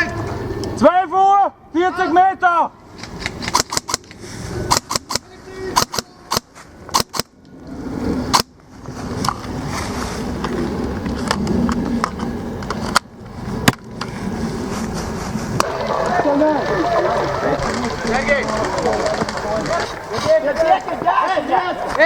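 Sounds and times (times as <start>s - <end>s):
steady rumbling noise: 2.9s - 22.0s
airsoft gun shots: 4.7s - 5.2s, 5.8s - 7.3s.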